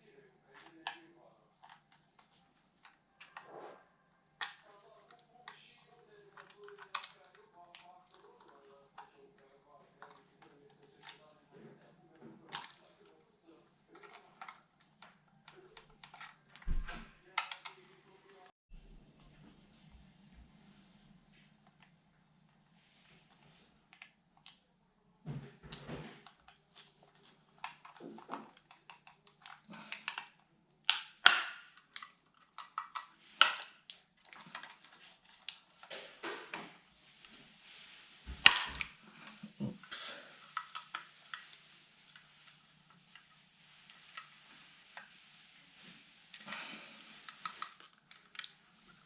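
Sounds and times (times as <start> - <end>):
plastic battery pack clicks and snaps: 27.6 - 36.7, 38.3 - 38.9.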